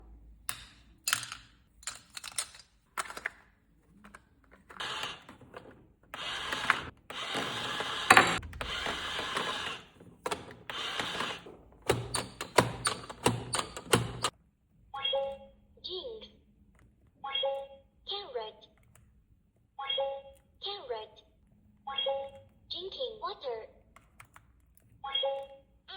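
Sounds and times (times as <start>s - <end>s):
plastic parts clicking and snapping: 0.4s - 5.7s.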